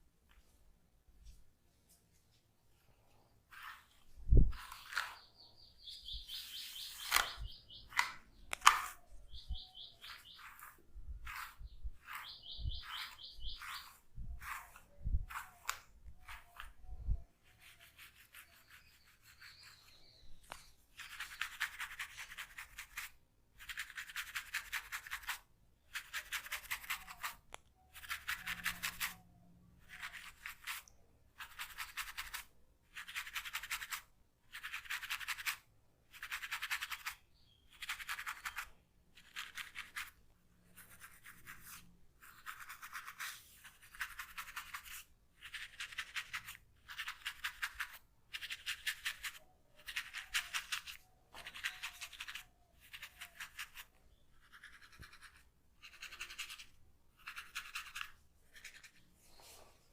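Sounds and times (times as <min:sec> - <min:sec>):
comb raking through hair: 0:03.5 - 0:05.3, 0:10.0 - 0:16.8.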